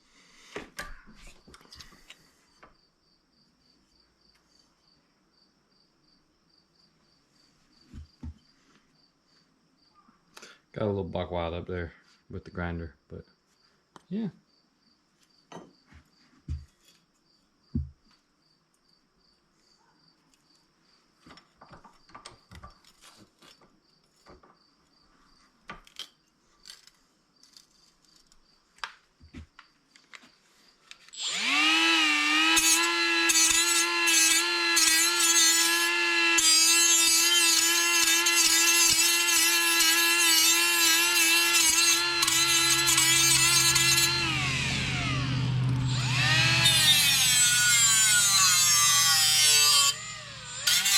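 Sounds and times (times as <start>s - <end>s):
angle grinder on metal: 31.1s - 50.9s.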